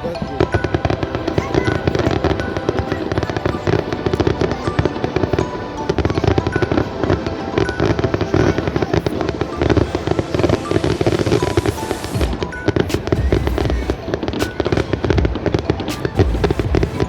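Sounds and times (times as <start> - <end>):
fireworks bangs and crackles: 10.4 - 17.0.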